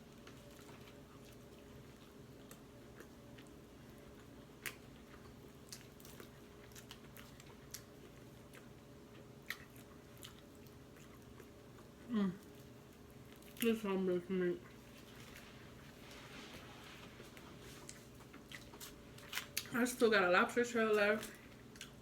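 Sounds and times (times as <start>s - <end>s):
low steady hum: 0.0s - 22.0s
wet chewing clicks and smacks: 0.2s - 12.0s, 21.3s - 22.0s.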